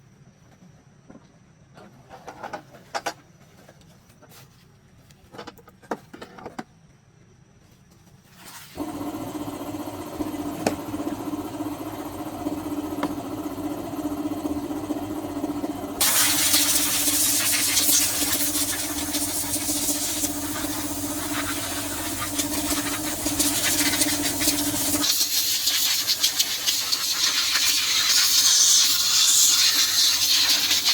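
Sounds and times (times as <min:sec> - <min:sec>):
engine starting and running: 0:08.8 - 0:30.9.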